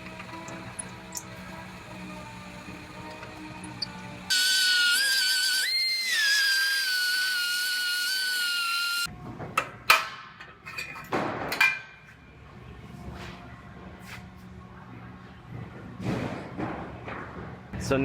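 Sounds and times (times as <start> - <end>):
power tool whining: 0.0 - 9.1.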